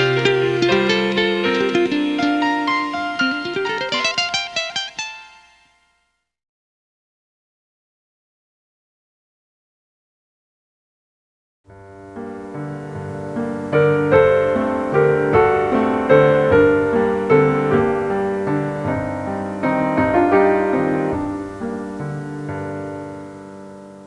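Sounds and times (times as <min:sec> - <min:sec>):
slow piano melody: 0:00.0 - 0:05.7, 0:11.7 - 0:24.0.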